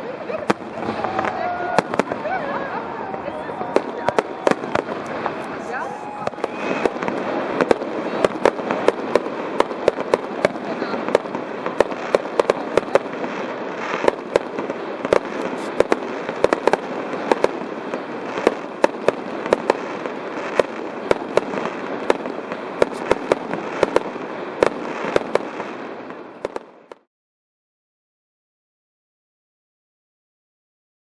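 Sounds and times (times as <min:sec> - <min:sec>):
fireworks bangs: 0:00.0 - 0:27.1.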